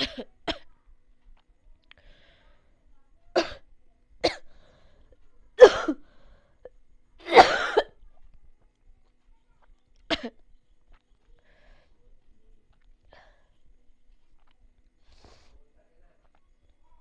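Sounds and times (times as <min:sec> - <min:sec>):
person coughing: 0:07.3 - 0:08.0.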